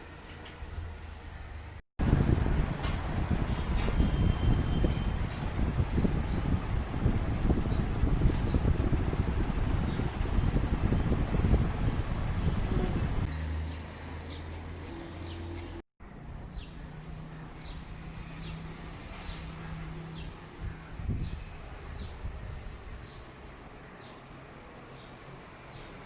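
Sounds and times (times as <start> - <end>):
ceiling fan whine and rumble: 2.0 - 13.3
faint bird chirps: 3.1 - 13.3.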